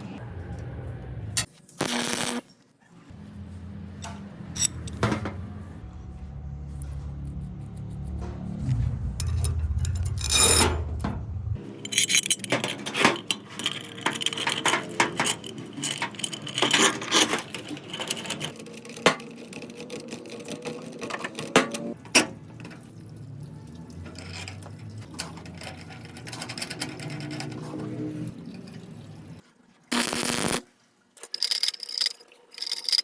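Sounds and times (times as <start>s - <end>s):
low hum: 3.1s - 18.6s
metal pieces clinking: 4.6s - 5.0s, 9.2s - 10.8s, 11.6s - 22.8s, 24.0s - 27.8s, 31.2s - 33.0s.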